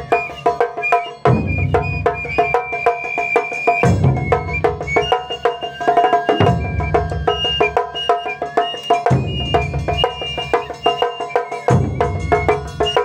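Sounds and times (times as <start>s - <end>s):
taiko drum ensemble: 0.0s - 13.0s
deep big drum booms: 3.8s - 5.0s, 6.4s - 7.4s, 9.1s - 10.3s.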